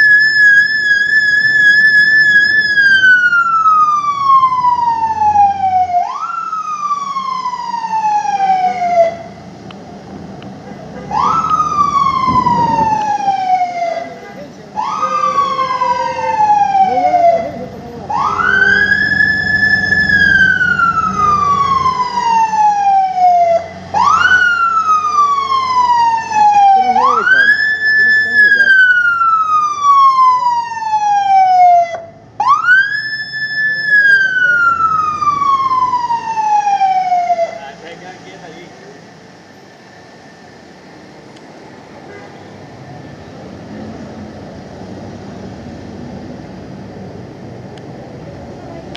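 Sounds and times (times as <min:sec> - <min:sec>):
ambulance siren wailing: 0:00.0 - 0:09.6, 0:11.1 - 0:38.0
heavy street traffic: 0:00.0 - 0:48.9
low steady horn tone: 0:42.0 - 0:42.7.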